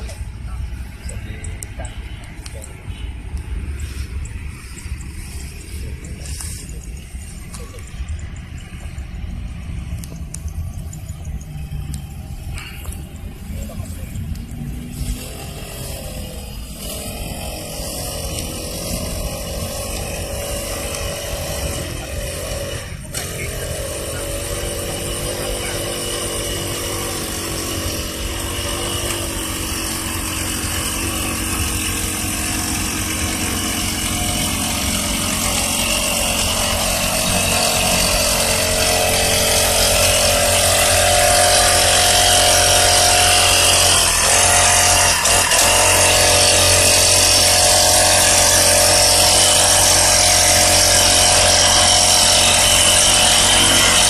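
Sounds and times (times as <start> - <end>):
small engine running: 0.0 - 54.0.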